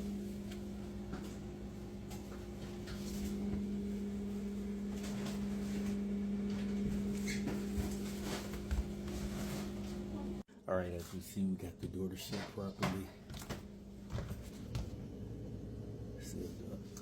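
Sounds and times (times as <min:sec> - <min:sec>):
refrigerator hum: 0:00.0 - 0:17.0.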